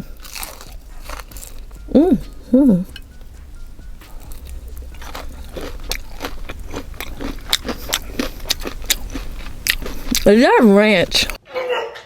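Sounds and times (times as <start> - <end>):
crunchy chewing: 0.0 - 11.4.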